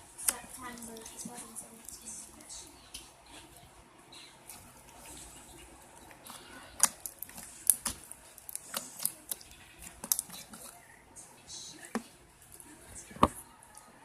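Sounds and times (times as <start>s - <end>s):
slime sticky pops: 6.8s - 10.7s.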